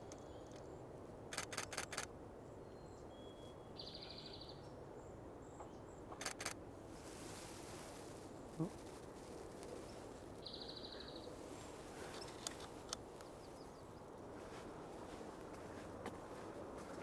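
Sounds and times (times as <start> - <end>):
outdoor background noise: 0.0 - 17.0
sharp clicks: 1.3 - 2.1.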